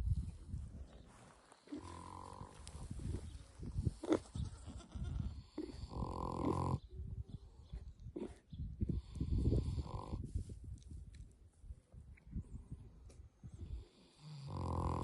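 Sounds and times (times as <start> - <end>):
pig snoring: 1.7 - 2.5, 5.4 - 6.8, 13.9 - 15.0.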